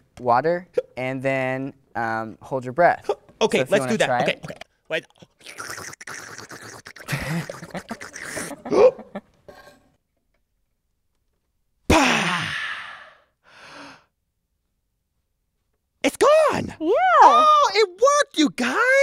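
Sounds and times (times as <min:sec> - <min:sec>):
person gulping water: 0:04.3 - 0:09.0
sharp gasp: 0:11.9 - 0:14.1
faint breath: 0:12.7 - 0:14.1.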